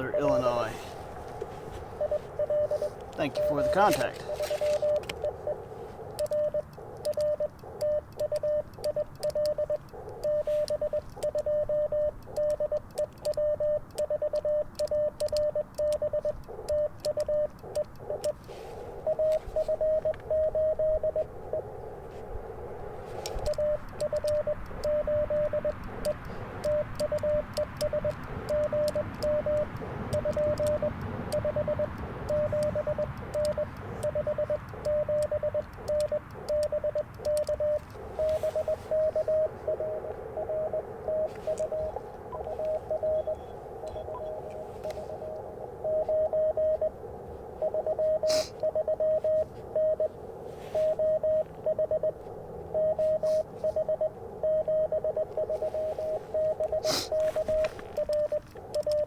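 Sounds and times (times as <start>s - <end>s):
morse code tones: 0.0s - 59.0s
radio receiver hiss: 0.0s - 59.0s
faint clicks: 1.1s - 59.0s.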